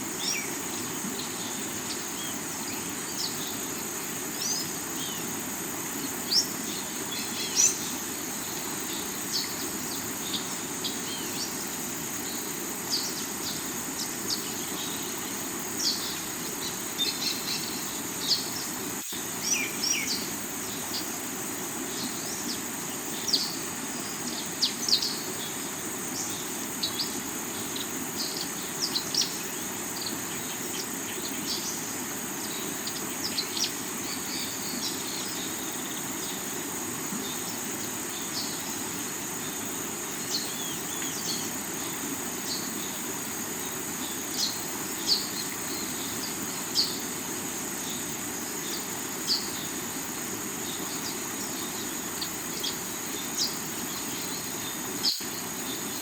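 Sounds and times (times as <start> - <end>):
high insect drone: 0.0 - 56.0
bird chirps and tweets: 40.2 - 41.5, 50.6 - 56.0.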